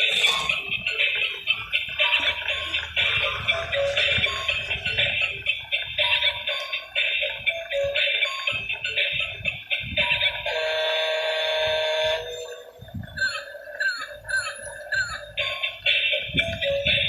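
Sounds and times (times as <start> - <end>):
electronic music: 0.0 - 7.6.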